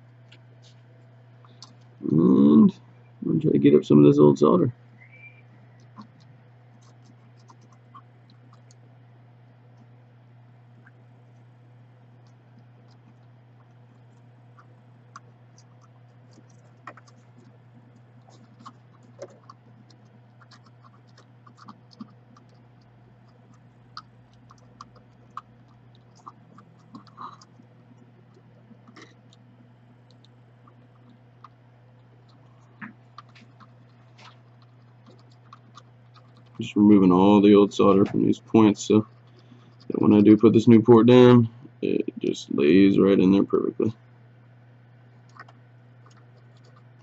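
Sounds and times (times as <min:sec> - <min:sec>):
steady low hum: 0:00.0 - 0:47.0
soldering iron ticks and crackles: 0:05.8 - 0:40.7.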